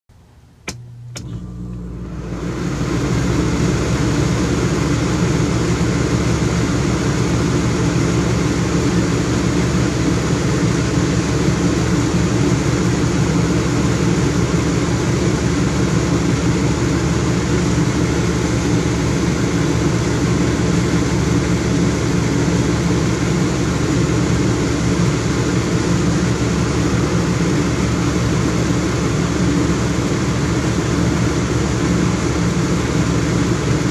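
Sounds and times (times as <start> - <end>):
air conditioning unit humming: 0.1 - 33.9.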